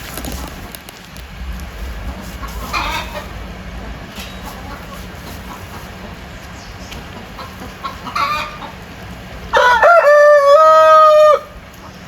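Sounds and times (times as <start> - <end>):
rooster crowing: 9.5 - 11.6.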